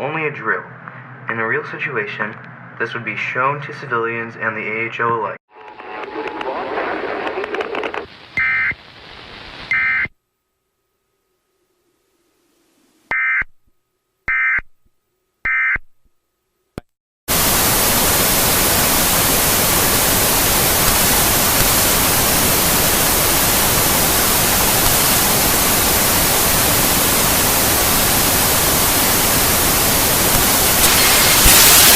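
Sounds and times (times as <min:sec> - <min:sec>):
loud static hiss: 0:05.6 - 0:10.1, 0:17.3 - 0:31.9
electronic data bursts: 0:30.4 - 0:31.9.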